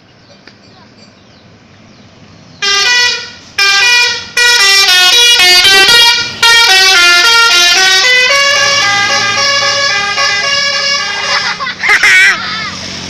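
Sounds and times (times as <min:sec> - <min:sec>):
musical bus air horn playing a tune: 0:02.6 - 0:11.7.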